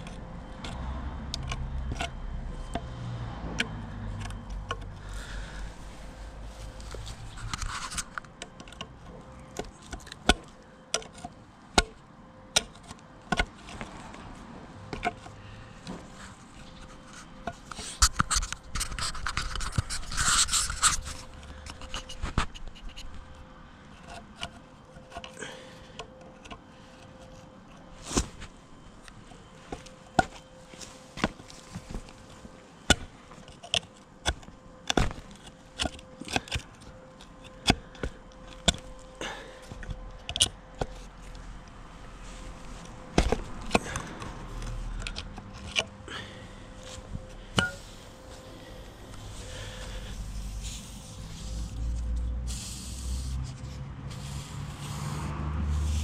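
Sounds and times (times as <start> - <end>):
faint steady hum: 0.0 - 55.2.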